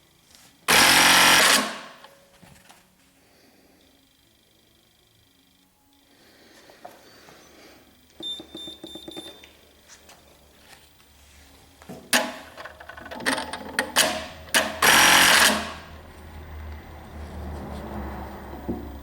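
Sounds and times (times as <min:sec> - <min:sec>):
sewing machine rapid strokes: 0:00.7 - 0:02.0, 0:14.0 - 0:15.9.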